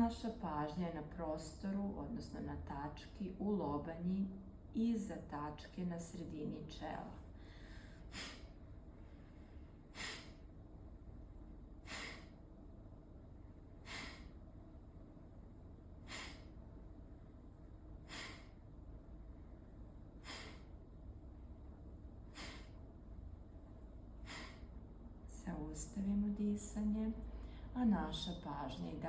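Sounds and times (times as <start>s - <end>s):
quiet inhale: 7.2s - 10.6s, 11.8s - 12.5s, 13.8s - 14.5s, 16.0s - 16.7s, 18.0s - 18.7s, 20.1s - 20.8s, 22.2s - 23.0s, 24.2s - 24.9s, 27.3s - 27.8s
forceful breath exhalations: 7.4s - 10.5s, 11.8s - 12.4s, 13.8s - 14.4s, 16.0s - 16.6s, 18.0s - 18.6s, 20.2s - 20.8s, 22.3s - 22.8s, 24.2s - 24.7s.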